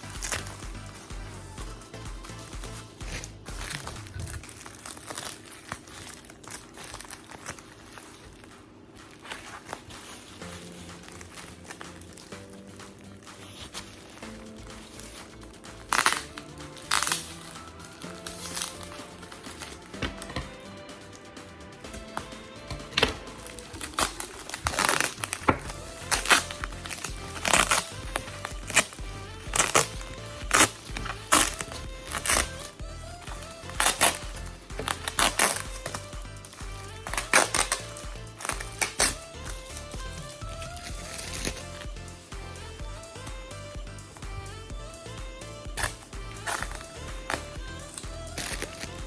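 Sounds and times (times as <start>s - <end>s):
background music: 0.0s - 6.0s, 7.1s - 49.0s
plastic packaging crinkling: 3.1s - 20.4s, 45.8s - 49.0s.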